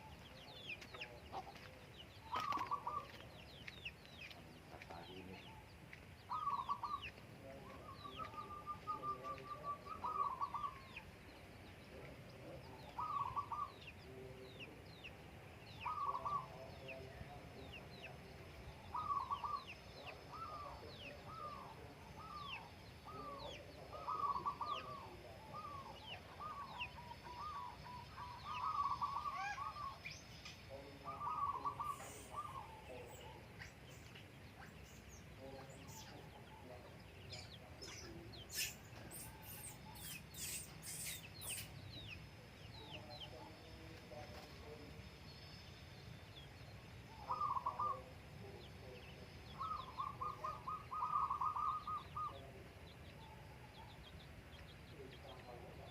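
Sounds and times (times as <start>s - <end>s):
small birds chirping: 0.0s - 55.9s
dove cooing: 2.2s - 3.3s, 6.3s - 11.0s, 12.4s - 14.4s, 15.8s - 17.3s, 18.7s - 30.0s, 30.8s - 33.5s, 47.1s - 48.6s, 49.5s - 52.6s.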